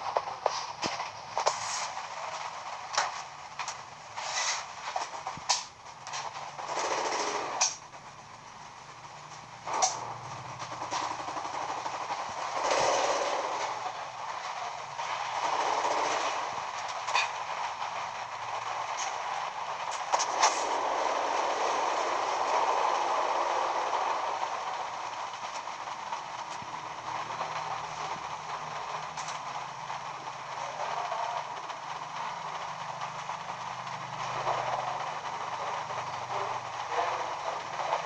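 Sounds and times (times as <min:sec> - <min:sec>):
ceiling fan air whoosh: 0:00.0 - 0:38.0.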